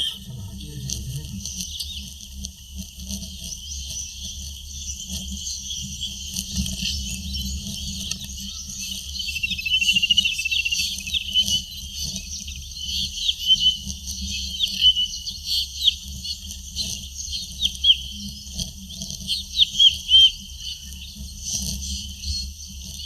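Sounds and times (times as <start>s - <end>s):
steady low rumble: 0.0s - 1.5s
birds chirping: 0.0s - 2.2s, 3.4s - 23.0s.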